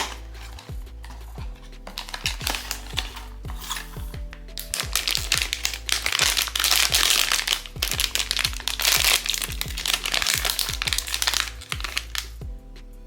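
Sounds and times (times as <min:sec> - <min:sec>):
plastic packaging crinkling: 0:00.0 - 0:12.4
background music with steady beat: 0:00.0 - 0:13.0.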